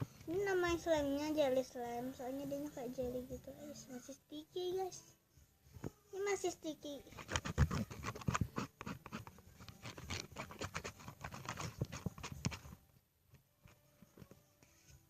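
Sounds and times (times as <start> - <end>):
slime squelching: 7.1 - 12.7.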